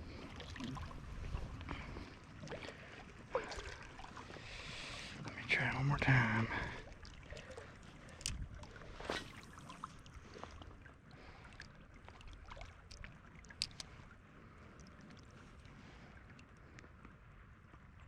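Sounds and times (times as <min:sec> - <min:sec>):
creek water flowing: 0:00.0 - 0:16.9
light clicks: 0:12.9 - 0:14.1.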